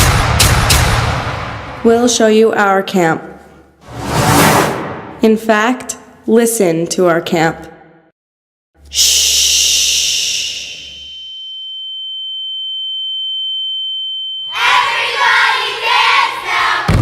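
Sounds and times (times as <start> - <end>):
steady high pure tone: 8.9 - 16.2
group of voices singing: 14.5 - 17.0.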